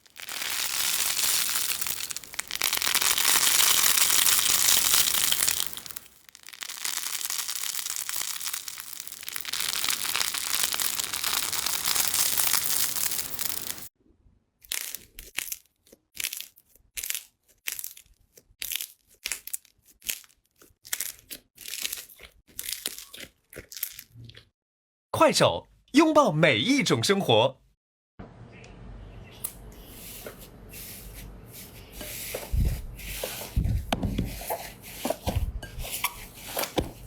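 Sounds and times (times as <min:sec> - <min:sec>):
slime crackling and crunching: 0:00.0 - 0:13.9, 0:14.6 - 0:24.2.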